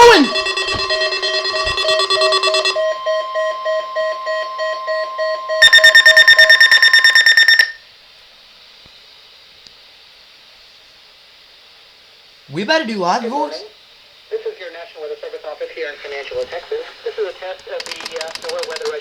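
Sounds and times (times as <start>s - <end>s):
pulsing alarm beeps: 0.0s - 7.8s
rapid loud beeping: 0.0s - 7.8s, 16.0s - 19.0s
steady warning tone: 0.0s - 7.8s.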